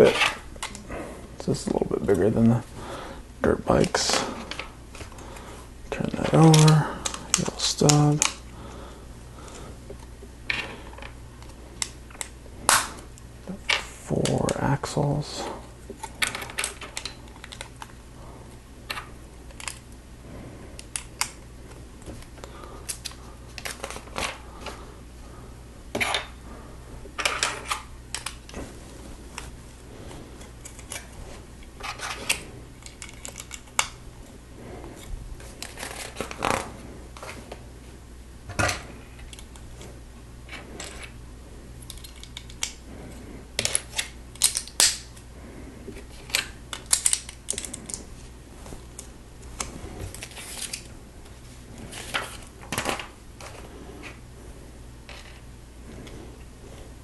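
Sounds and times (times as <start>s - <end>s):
plastic bricks clicking and snapping: 43.6s - 45.1s, 46.3s - 48.0s.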